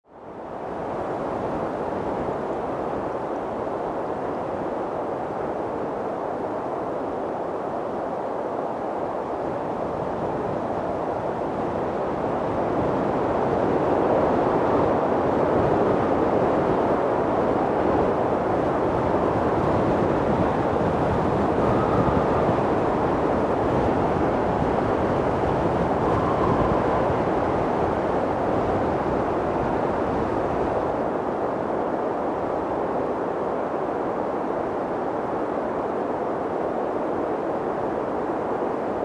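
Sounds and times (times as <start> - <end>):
whistling wind howls: 0.0 - 39.0
wind blowing hard: 0.1 - 39.0.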